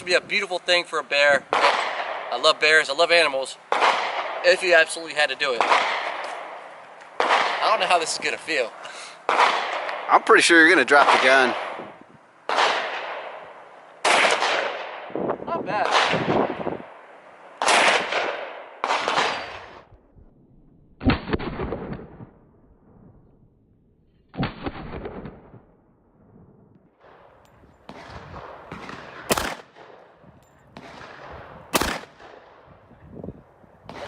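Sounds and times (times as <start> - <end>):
pistol shots with echo: 1.5 - 2.8, 3.7 - 8.4, 9.3 - 10.1, 10.8 - 11.9, 12.5 - 19.8, 27.0 - 32.7.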